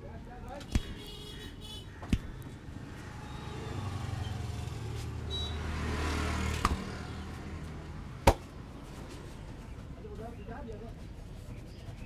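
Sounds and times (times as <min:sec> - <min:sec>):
sharp smacks: 0:00.6 - 0:01.0, 0:02.0 - 0:02.5, 0:06.5 - 0:06.9, 0:08.2 - 0:08.5
vehicle engine hum passing: 0:02.4 - 0:10.0.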